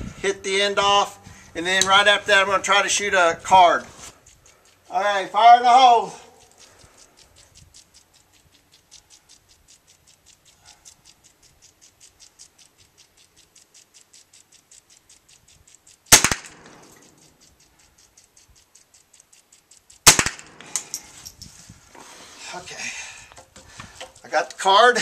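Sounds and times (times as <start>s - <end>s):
faint fast ticking: 0.0s - 21.8s, 22.4s - 25.0s
gunshots: 16.1s - 17.0s, 20.0s - 20.8s.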